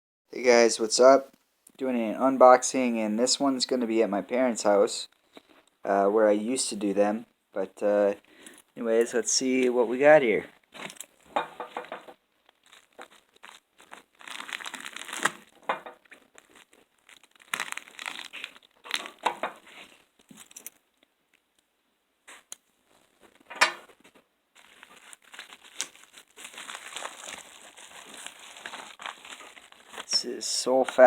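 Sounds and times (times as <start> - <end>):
packaging crinkling and tearing: 10.5 - 21.4, 22.3 - 31.0.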